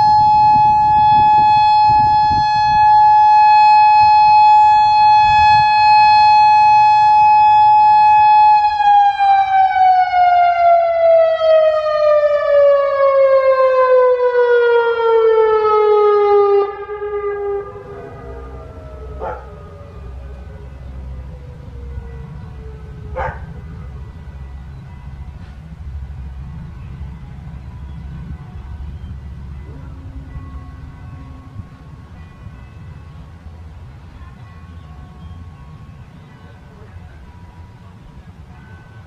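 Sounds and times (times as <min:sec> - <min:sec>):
warning siren winding down: 0:00.0 - 0:24.3.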